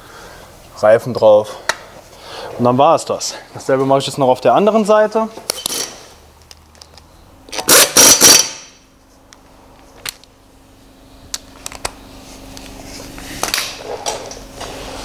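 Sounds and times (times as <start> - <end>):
faint steady hum: 0.0 - 15.0
rattling power tool bursts: 7.5 - 8.8.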